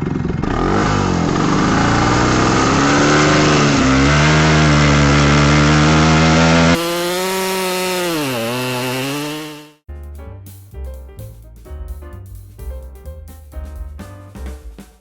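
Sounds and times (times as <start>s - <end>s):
chainsaw cutting logs: 0.1s - 9.8s.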